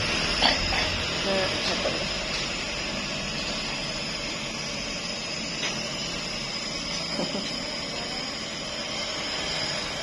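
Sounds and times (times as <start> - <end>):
nebulizer humming and hissing: 0.0 - 10.0.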